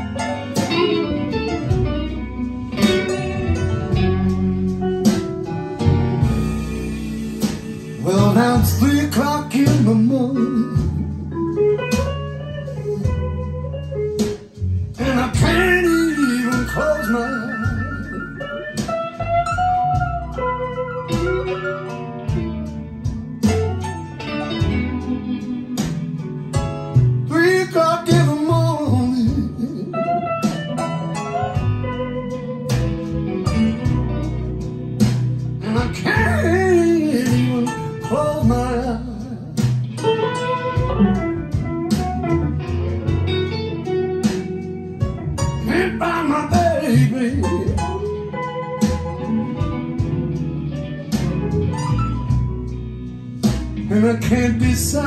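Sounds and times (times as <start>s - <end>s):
blues guitar sliding notes: 0.0s - 55.0s
steady bass line: 0.0s - 55.0s
person singing: 8.0s - 11.1s, 15.0s - 18.8s, 27.2s - 30.4s, 35.6s - 40.4s, 45.6s - 48.4s, 53.8s - 55.0s.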